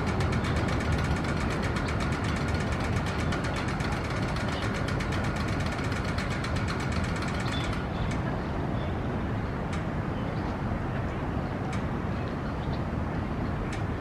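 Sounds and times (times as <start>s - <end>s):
fast mechanical ticking: 0.0s - 8.3s
urban traffic rumble: 0.0s - 14.0s.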